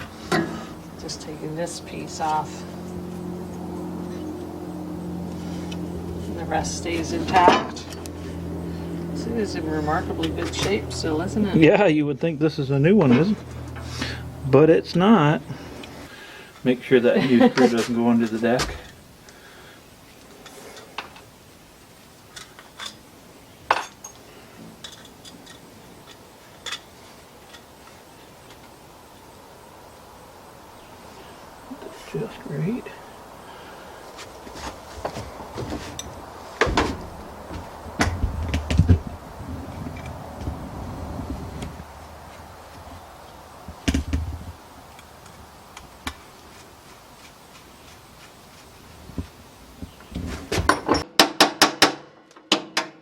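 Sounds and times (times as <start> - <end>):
knocks of barbecue parts: 50.5 - 53.0.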